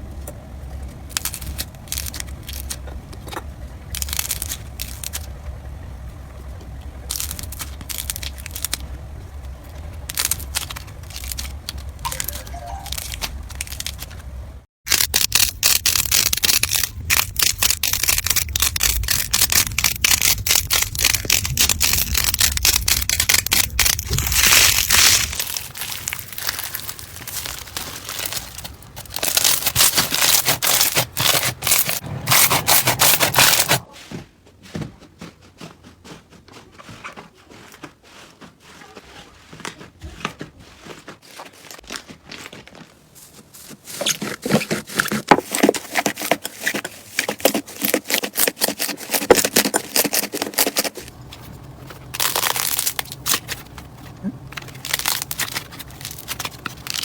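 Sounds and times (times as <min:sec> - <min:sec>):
slime crackling and popping: 0:01.1 - 0:05.3, 0:07.1 - 0:08.8, 0:10.0 - 0:14.2, 0:14.9 - 0:33.6, 0:52.1 - 0:53.7, 0:54.5 - 0:57.0.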